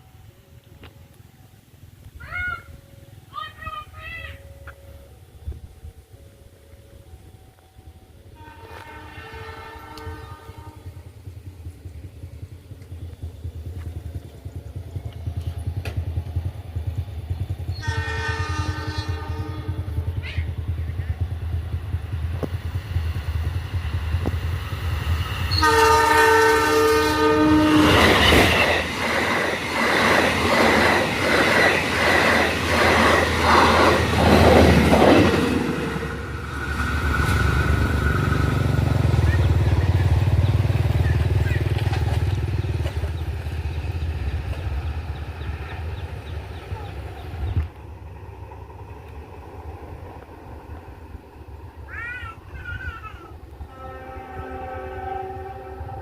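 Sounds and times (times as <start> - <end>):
train rumble: 0.0 - 56.0
locomotive horn: 8.2 - 11.2, 17.7 - 20.2, 25.5 - 28.7, 53.6 - 56.0
train wheels clacking over rail joints: 36.4 - 47.8.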